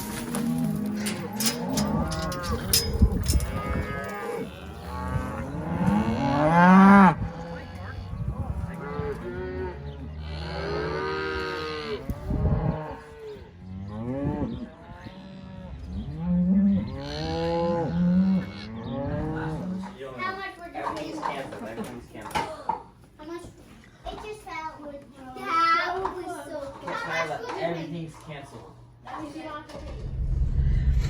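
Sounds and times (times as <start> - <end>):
cows and calves mooing: 0.0 - 20.0.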